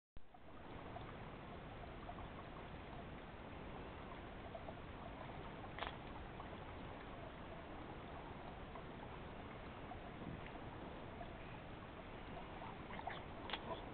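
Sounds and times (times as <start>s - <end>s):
river water flowing: 0.2s - 13.9s.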